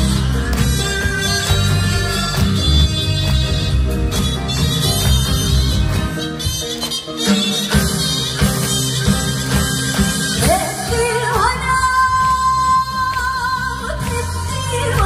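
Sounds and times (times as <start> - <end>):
live band playing: 0.0 - 15.0
woman singing with vibrato: 10.4 - 15.0.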